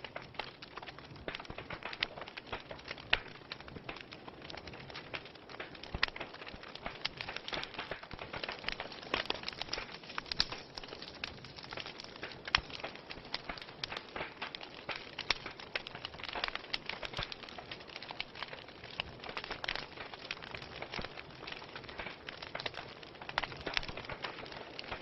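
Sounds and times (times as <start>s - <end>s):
fire pops and snaps: 0.0s - 25.0s
wood fire crackling: 0.0s - 25.0s.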